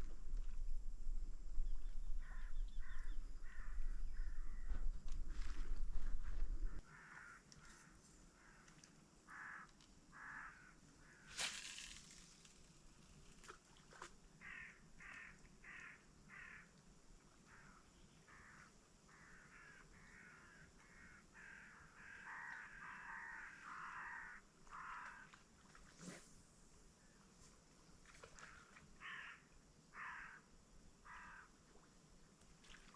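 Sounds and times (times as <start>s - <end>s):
crows cawing faintly: 2.2s - 5.6s, 6.6s - 11.4s, 14.4s - 16.8s, 17.4s - 25.4s, 28.1s - 31.5s.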